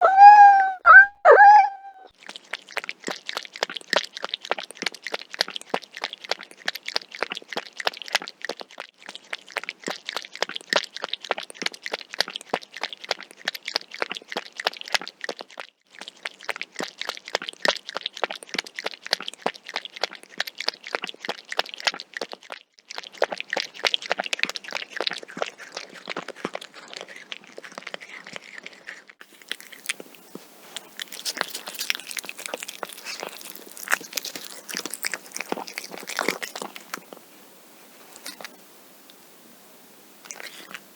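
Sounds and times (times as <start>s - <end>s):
cat meowing: 0.0s - 2.1s
cat lapping liquid: 1.6s - 39.2s, 40.1s - 40.9s.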